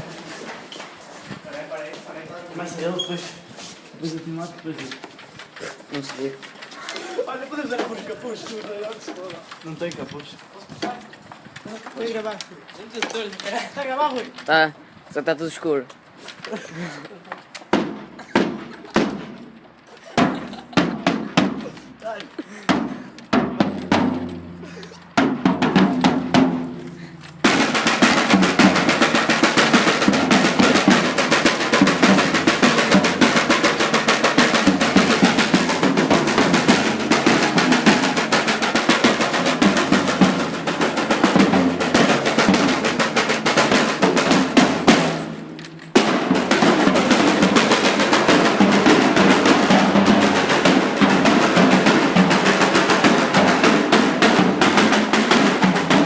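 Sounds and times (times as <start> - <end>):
snare drum rolls: 17.6 - 24.6, 25.2 - 56.0
percussion group drumming: 17.7 - 19.4, 20.1 - 22.1, 22.7 - 56.0.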